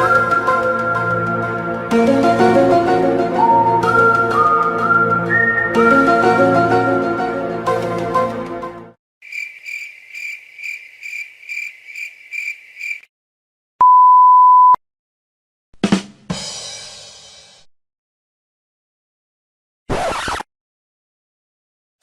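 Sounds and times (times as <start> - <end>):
cricket chirping: 9.2 - 13.1
censor bleep: 13.8 - 14.8.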